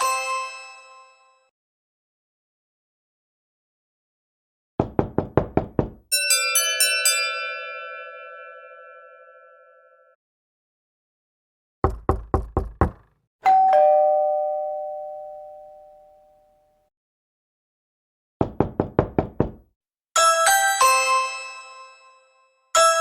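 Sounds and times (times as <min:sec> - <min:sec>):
knocking on a door: 0:04.8 - 0:06.1, 0:11.8 - 0:13.2, 0:18.4 - 0:19.7
multi-note musical doorbell chime: 0:06.1 - 0:10.2, 0:13.4 - 0:16.7, 0:22.8 - 0:23.0
two-tone doorbell chime: 0:06.1 - 0:10.2, 0:13.4 - 0:16.8, 0:22.8 - 0:23.0.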